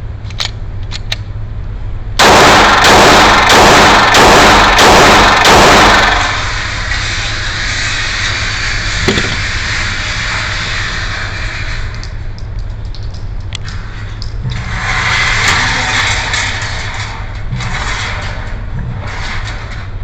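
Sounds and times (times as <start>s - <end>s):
low background rumble: 0.0s - 20.0s
pistol shots: 2.2s - 6.5s.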